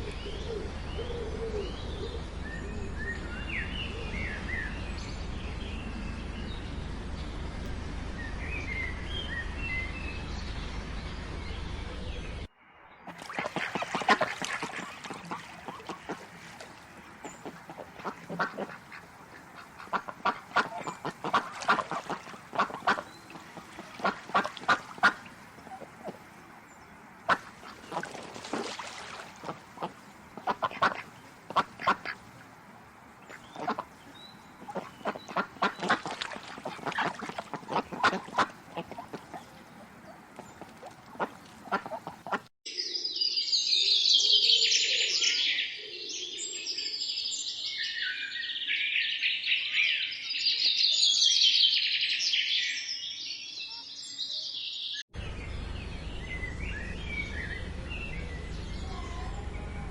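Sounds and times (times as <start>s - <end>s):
songbirds chirping: 0.0s - 59.9s
waterfowl calling: 13.1s - 26.5s, 27.2s - 32.6s, 33.2s - 42.5s.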